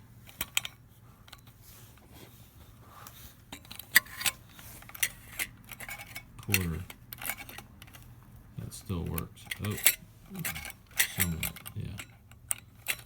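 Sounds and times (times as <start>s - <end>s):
small metallic clicks: 3.5s - 8.1s, 9.1s - 13.0s.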